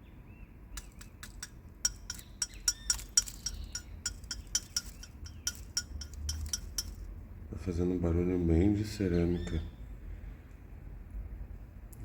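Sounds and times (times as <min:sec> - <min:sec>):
clay pipe ringing clinks: 0:00.8 - 0:07.1.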